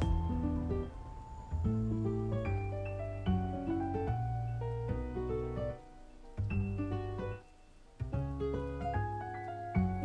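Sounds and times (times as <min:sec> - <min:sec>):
sustained bass notes: 0:00.0 - 0:04.6.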